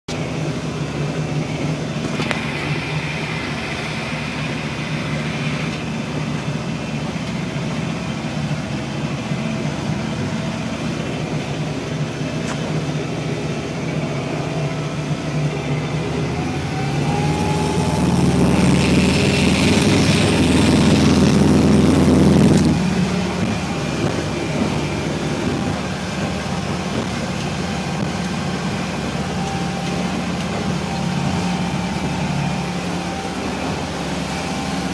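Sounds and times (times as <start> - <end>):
boat engine droning: 0.1 - 34.9
brief rising tone: 15.4 - 26.1.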